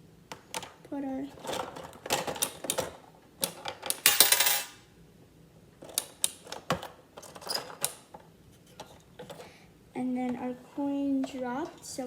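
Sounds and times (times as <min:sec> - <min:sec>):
coin dropping through mechanism: 0:03.9 - 0:04.8.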